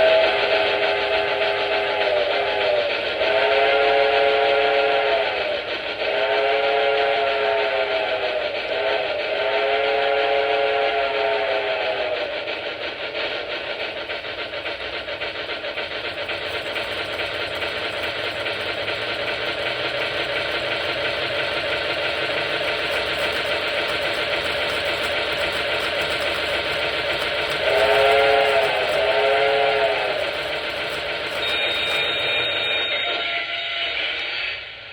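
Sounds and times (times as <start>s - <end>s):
steam chuffing: 0.0s - 34.9s
chime steam whistle: 16.6s - 34.9s.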